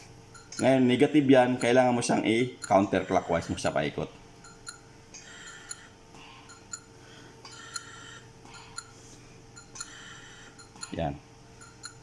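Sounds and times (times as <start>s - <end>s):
faint steady hum: 0.0s - 12.0s
soft ticking: 0.3s - 3.8s, 4.4s - 6.9s, 8.6s - 8.9s, 9.5s - 12.0s.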